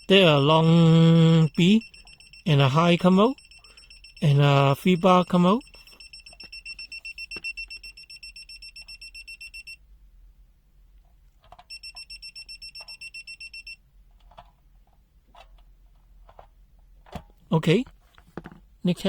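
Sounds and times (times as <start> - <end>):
multimeter pulsing beep: 0.0 - 9.8, 11.7 - 13.8.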